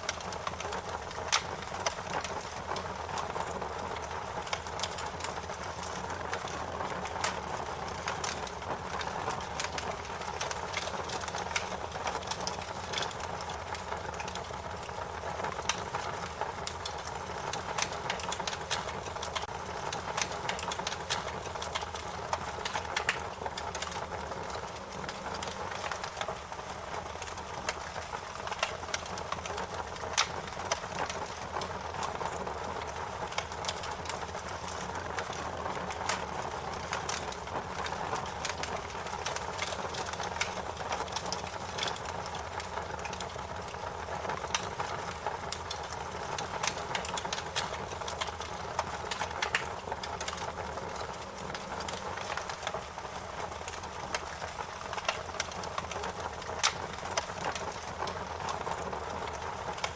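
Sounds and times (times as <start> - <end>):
steady fire hiss: 0.0 - 59.9
wood fire crackling: 0.0 - 59.9
sharp pops and snaps: 0.1 - 2.6, 15.5 - 59.9.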